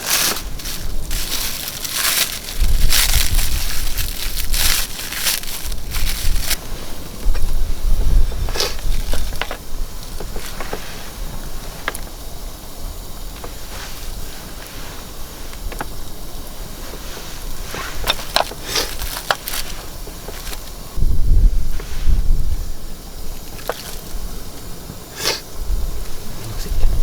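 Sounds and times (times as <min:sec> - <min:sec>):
wind rumbling on microphone: 0:00.0 - 0:27.0
wood fire crackling and popping: 0:17.8 - 0:20.7.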